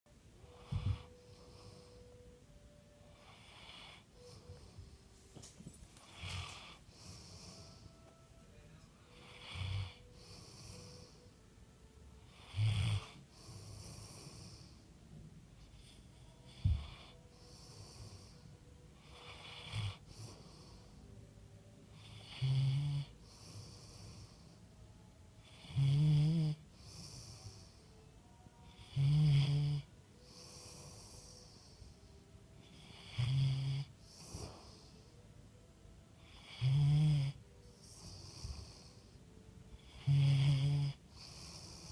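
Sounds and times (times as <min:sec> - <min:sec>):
person snoring: 0:06.0 - 0:07.9, 0:09.1 - 0:11.3, 0:12.3 - 0:14.8, 0:22.0 - 0:24.4, 0:25.4 - 0:27.8, 0:28.7 - 0:31.8, 0:32.6 - 0:35.0, 0:36.2 - 0:39.0, 0:39.8 - 0:41.9.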